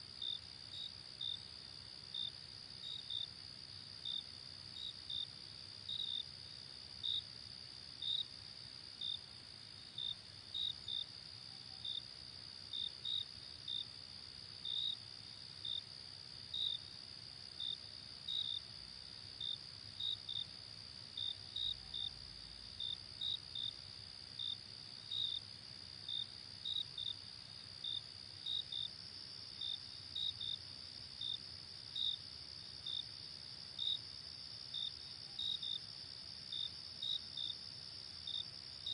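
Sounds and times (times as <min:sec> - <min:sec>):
cricket chirps: 0:00.0 - 0:38.9
high-pitched cricket trill: 0:21.2 - 0:38.9.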